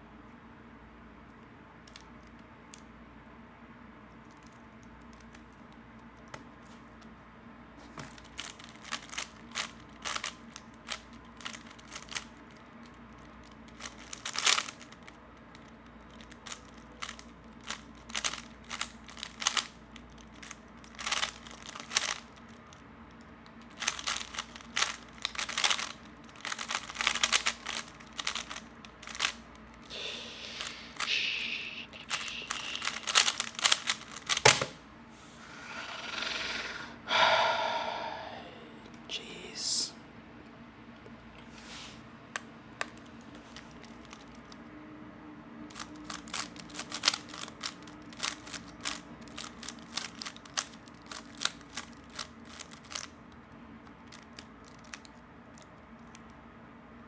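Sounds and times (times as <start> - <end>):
puzzle cube plastic clicks: 8.1 - 34.8, 45.7 - 53.1.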